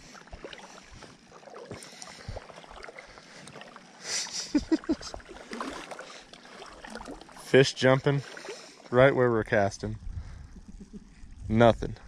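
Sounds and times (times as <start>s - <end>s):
stream water sloshing: 0.0s - 9.2s
water splash: 4.4s - 8.7s.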